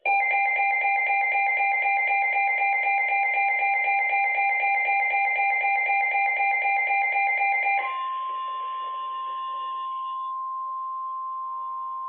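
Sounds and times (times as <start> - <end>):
steady warning alarm tone: 0.0 - 12.0.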